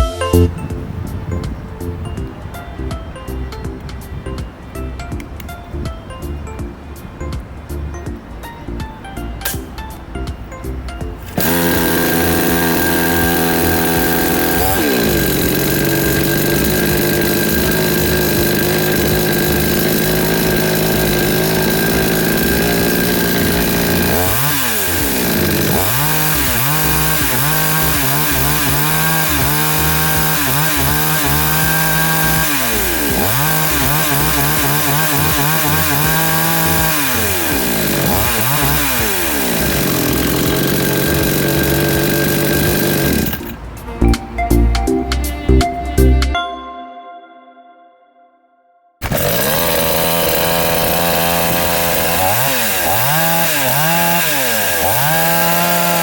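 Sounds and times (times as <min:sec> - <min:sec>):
chainsaw engine revving: 0:11.2 - 0:43.6, 0:49.0 - 0:56.0.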